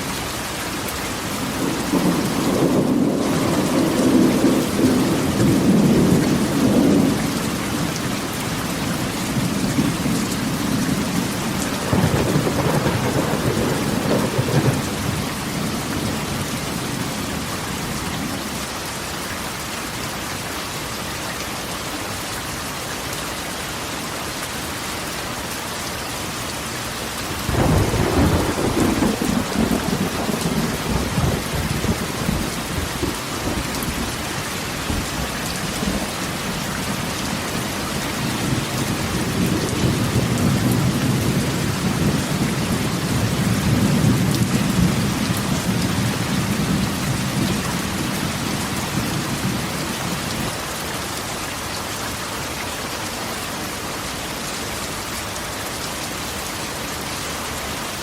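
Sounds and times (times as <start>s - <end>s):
rain on a tin roof: 0.0s - 58.0s
thunder clap and rumble: 1.4s - 8.1s, 8.9s - 17.3s, 27.4s - 50.5s.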